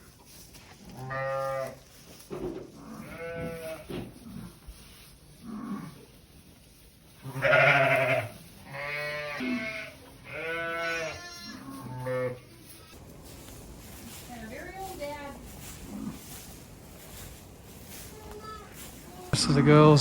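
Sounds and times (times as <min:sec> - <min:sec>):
sheep bleating: 0:00.9 - 0:01.8, 0:02.8 - 0:03.9, 0:07.2 - 0:13.0.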